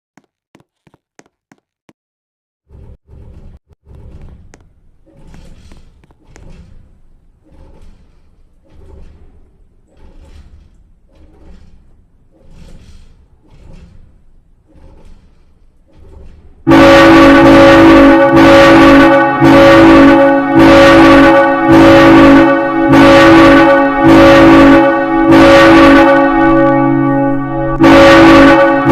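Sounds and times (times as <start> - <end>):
church bell ringing: 16.7 - 28.9.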